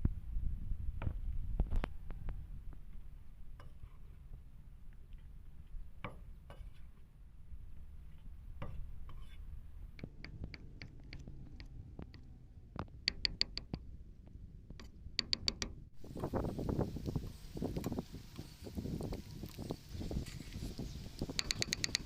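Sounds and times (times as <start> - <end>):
sharp clicks: 21.3 - 22.0.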